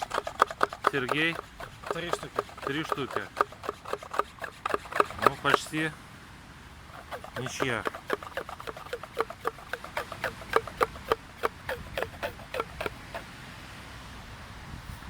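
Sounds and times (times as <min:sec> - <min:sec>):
air pump squeaking strokes: 0:00.0 - 0:06.0, 0:06.9 - 0:13.2.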